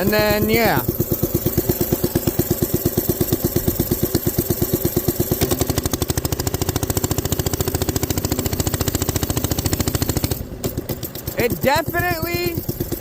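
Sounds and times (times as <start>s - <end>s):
small engine chugging: 0.0s - 13.0s.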